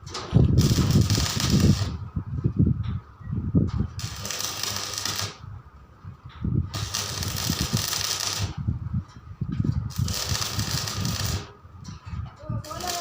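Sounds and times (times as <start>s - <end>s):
arc welding crackling hiss: 0.5s - 2.0s, 4.0s - 5.4s, 6.7s - 8.7s, 9.9s - 11.6s, 12.6s - 13.0s.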